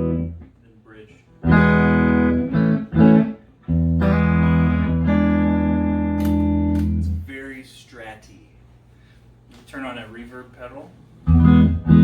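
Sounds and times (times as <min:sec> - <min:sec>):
clean electric guitar chords: 0:00.0 - 0:00.5, 0:01.4 - 0:07.2, 0:11.3 - 0:12.0.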